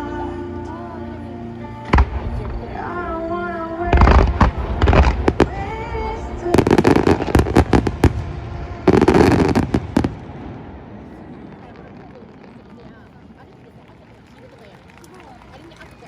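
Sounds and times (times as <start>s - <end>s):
music with held notes: 0.0s - 9.7s
fireworks crackling: 0.0s - 16.0s
fireworks booming: 1.8s - 13.9s.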